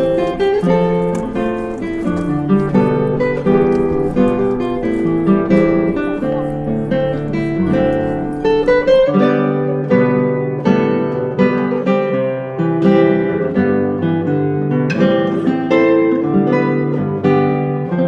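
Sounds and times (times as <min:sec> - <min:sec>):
acoustic guitar music: 0:00.0 - 0:18.0.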